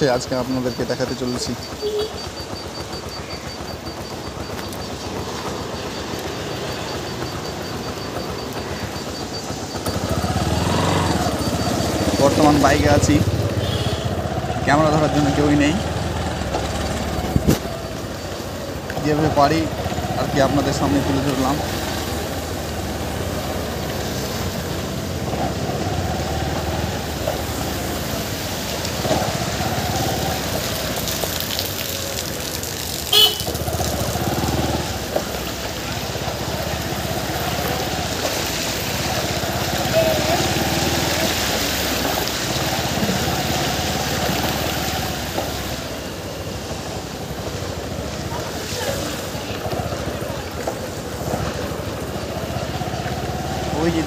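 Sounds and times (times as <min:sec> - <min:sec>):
motorbike and car traffic: 0:00.0 - 0:54.0.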